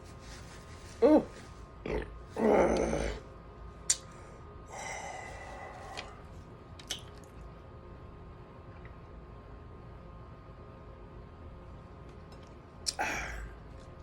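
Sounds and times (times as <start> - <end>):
mouth clicks: 3.9 - 4.2, 6.8 - 7.3, 12.8 - 13.0.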